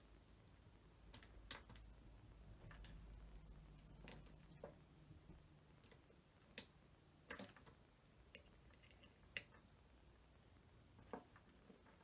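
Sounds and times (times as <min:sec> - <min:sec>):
small tools clicking and tapping: 0:08.3 - 0:09.6.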